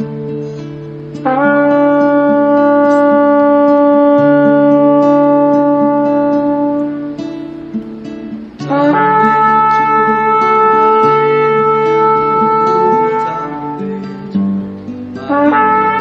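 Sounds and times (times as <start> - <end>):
sustained guitar chord: 0.0 - 16.0
shofar blast: 1.2 - 7.2, 8.6 - 14.3, 15.2 - 16.0.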